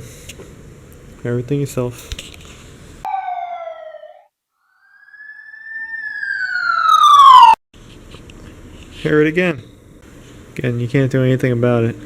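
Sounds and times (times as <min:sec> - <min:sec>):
siren wailing: 0:03.1 - 0:07.6.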